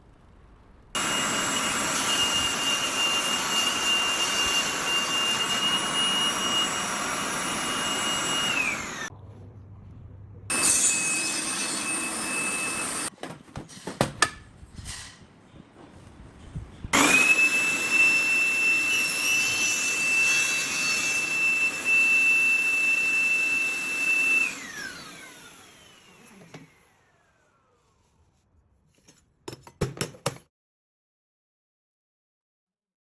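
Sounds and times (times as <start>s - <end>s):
table saw motor whine: 1.0s - 9.1s, 10.5s - 13.1s, 17.0s - 27.8s.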